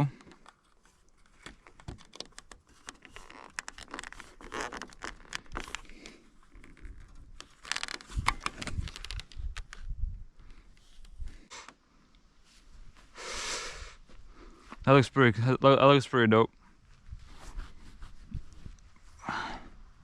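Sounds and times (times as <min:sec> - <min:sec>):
plastic scraping and rustling: 0:00.1 - 0:09.9
small plastic clicks: 0:00.1 - 0:09.9.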